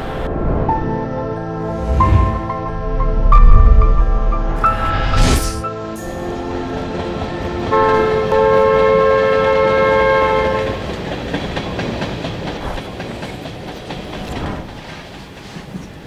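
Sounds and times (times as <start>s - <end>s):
train horn: 6.0s - 11.0s
train rumbling on rails: 6.0s - 16.0s.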